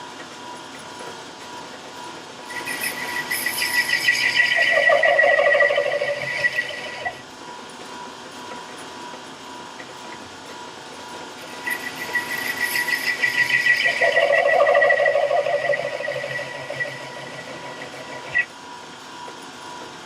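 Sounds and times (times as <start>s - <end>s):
lathe tool chattering on metal: 2.5s - 7.2s, 11.4s - 18.5s
lathe running: 2.5s - 7.3s, 11.0s - 18.5s.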